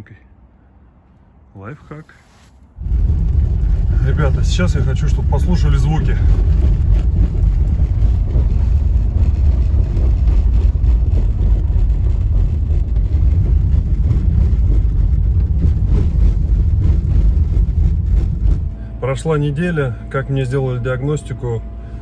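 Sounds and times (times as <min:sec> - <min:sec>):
car road rumble: 0:01.0 - 0:22.0
suspension knocks: 0:02.8 - 0:18.8.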